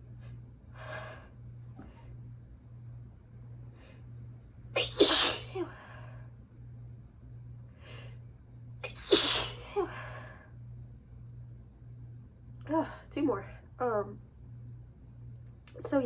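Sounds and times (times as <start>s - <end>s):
woman sneezing: 4.8s - 5.7s, 8.9s - 9.9s.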